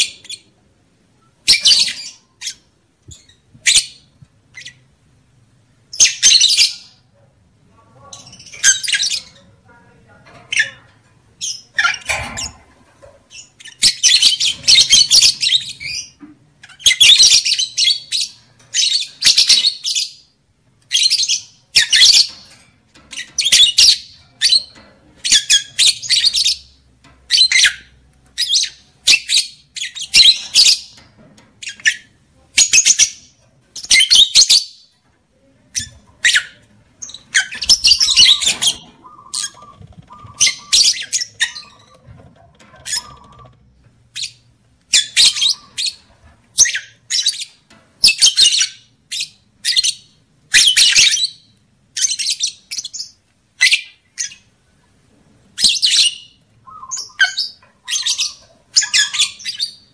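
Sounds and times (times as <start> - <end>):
lovebirds chattering shrilly: 35.8 - 42.1, 42.7 - 54.5, 55.6 - 59.9.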